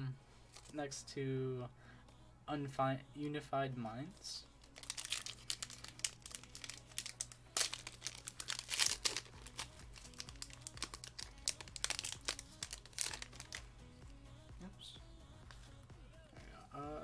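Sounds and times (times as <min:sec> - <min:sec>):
foil wrapper crinkling: 0:04.6 - 0:13.6.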